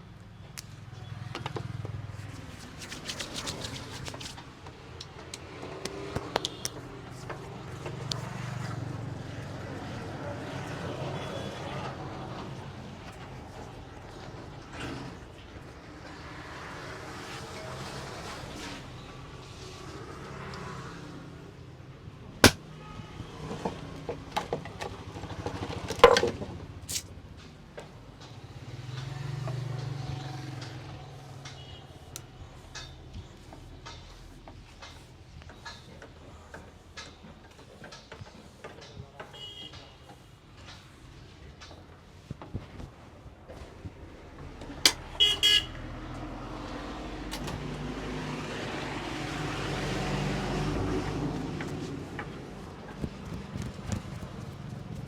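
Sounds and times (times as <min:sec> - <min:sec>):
road traffic hum: 0:00.0 - 0:55.0
hand slaps and claps on body: 0:02.2 - 0:04.4
vehicle horn toots: 0:39.4 - 0:39.7, 0:44.9 - 0:45.8
passing vehicle engine: 0:44.3 - 0:55.0.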